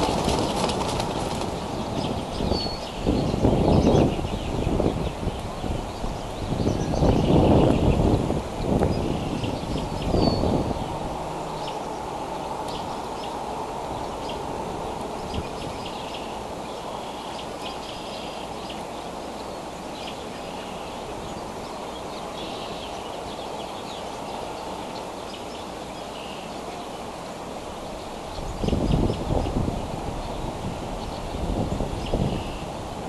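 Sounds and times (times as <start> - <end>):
wind or distant rumble: 0.0 - 17.0.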